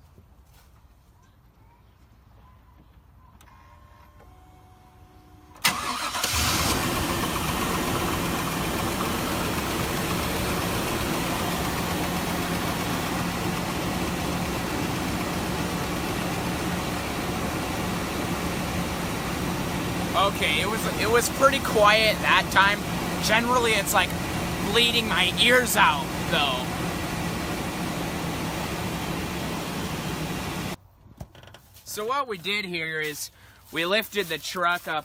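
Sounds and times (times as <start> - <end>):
truck engine starting and idling: 4.8 - 30.8.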